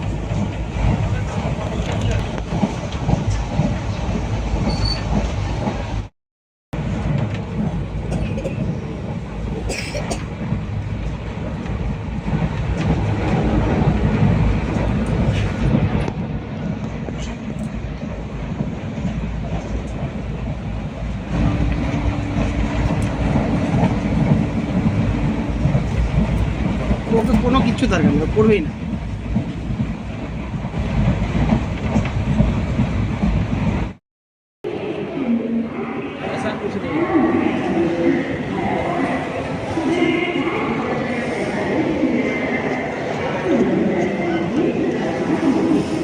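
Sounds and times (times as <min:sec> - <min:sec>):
train wheels rumbling on track: 0:00.0 - 0:06.1, 0:06.8 - 0:34.0.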